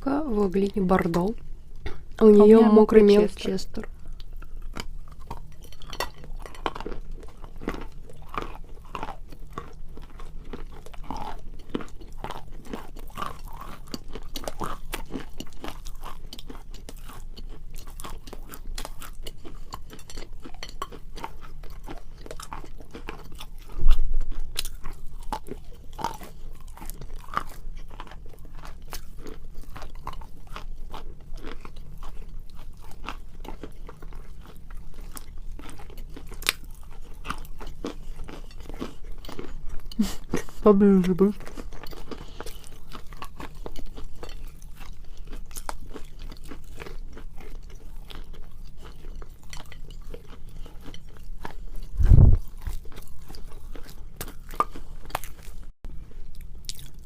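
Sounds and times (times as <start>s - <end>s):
chalk being chewed: 4.1s - 40.7s, 41.3s - 57.0s
heavy low thump: 52.0s - 52.4s.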